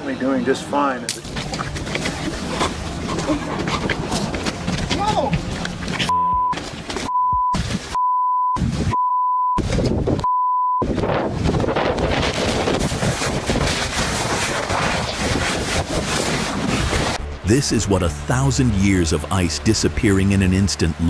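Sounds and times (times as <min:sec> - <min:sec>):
wind: 0:00.0 - 0:07.1
censor bleep: 0:06.0 - 0:09.6, 0:10.3 - 0:10.8.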